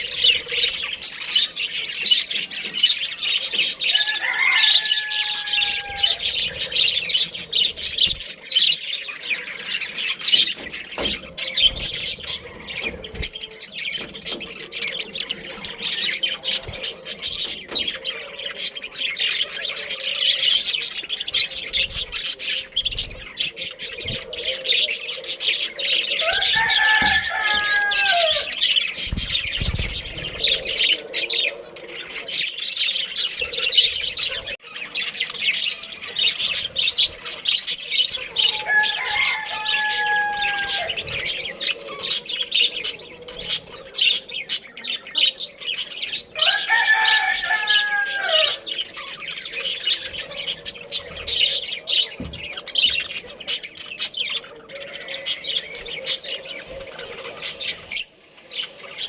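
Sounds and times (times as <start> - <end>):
budgerigars chattering and chirping: 0.0 - 59.0
low falling bird call: 26.2 - 31.3.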